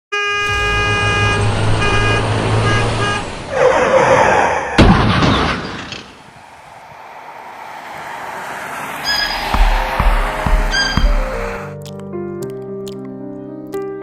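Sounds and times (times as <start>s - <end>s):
large vehicle horn blasts: 0.1s - 3.4s
sharp crash-like impact: 0.4s - 3.2s, 9.1s - 11.6s
rush of noise: 0.4s - 4.0s, 6.1s - 11.7s
low engine rumble: 6.6s - 11.6s.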